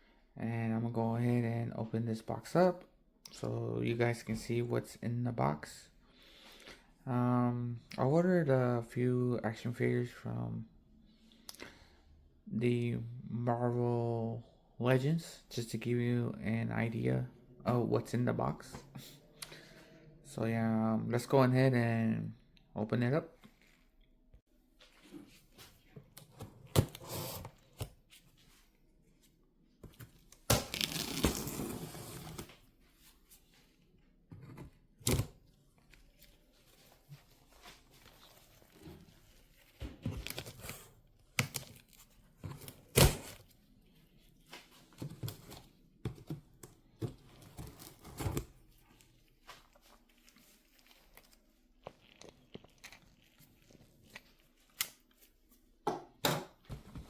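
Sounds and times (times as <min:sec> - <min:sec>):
cardboard tearing: 0:30.5 - 0:32.5
packing rustling and crinkling: 0:47.0 - 0:55.4.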